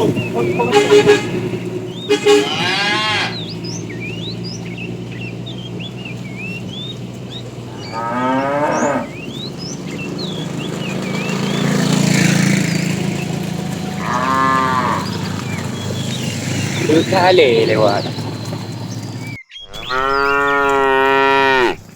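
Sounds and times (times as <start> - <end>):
birds chirping: 0.0 - 21.9
cows mooing: 0.0 - 21.9.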